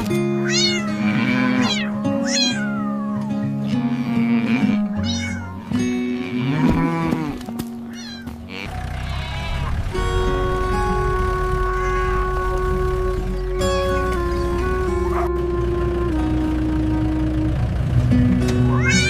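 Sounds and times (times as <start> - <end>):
music with long held notes: 0.0 - 7.9, 8.7 - 19.0
cat meowing: 0.4 - 3.8, 5.0 - 5.7, 7.9 - 8.3, 11.7 - 12.3, 18.7 - 19.0.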